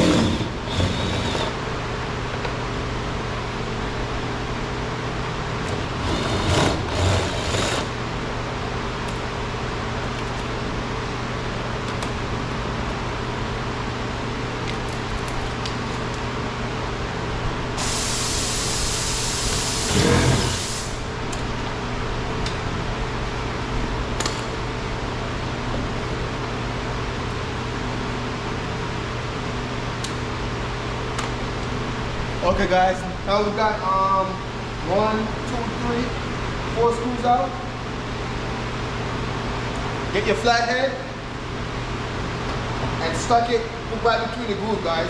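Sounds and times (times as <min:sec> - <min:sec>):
mechanical hum: 0:00.0 - 0:45.0
loud hiss: 0:17.8 - 0:21.1.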